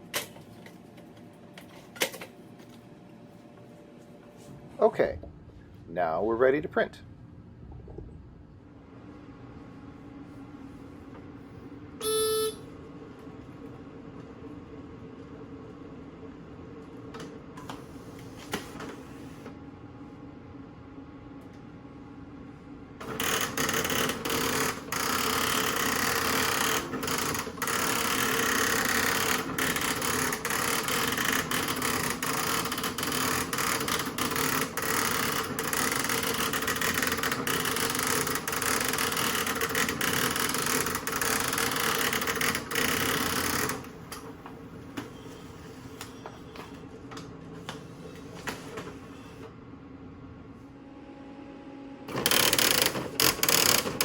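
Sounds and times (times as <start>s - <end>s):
printer idle hum: 8.7s - 54.0s
daisy wheel printer rattling: 52.1s - 54.0s
printer clicks: 52.1s - 54.0s.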